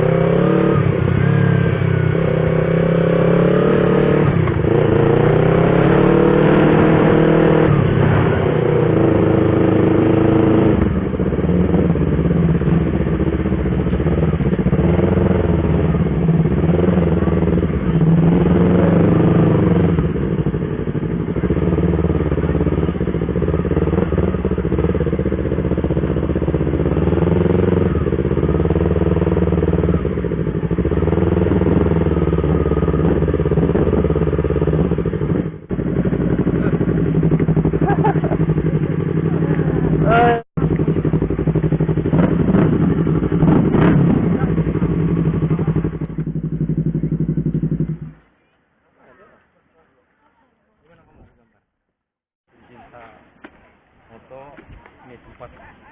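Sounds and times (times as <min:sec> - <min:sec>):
motorcycle engine running: 0:00.0 - 0:48.5.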